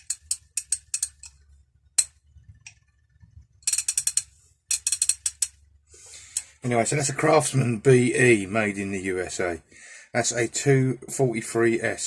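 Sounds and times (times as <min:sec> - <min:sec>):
ratchet clicking: 0:00.0 - 0:01.4, 0:03.6 - 0:05.6.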